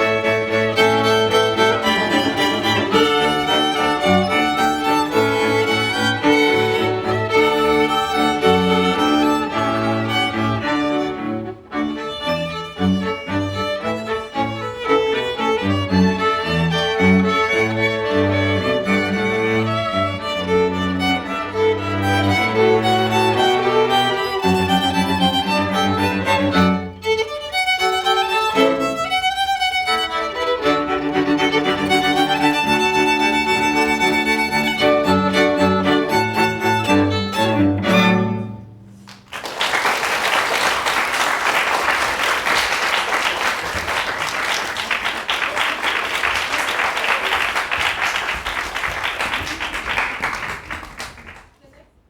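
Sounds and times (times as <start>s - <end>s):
violin: 0.0s - 39.4s
cello: 0.0s - 39.6s.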